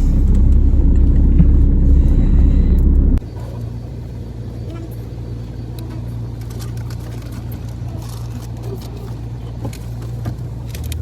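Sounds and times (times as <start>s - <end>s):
car engine drone: 0.0s - 3.2s
road noise: 0.0s - 3.2s.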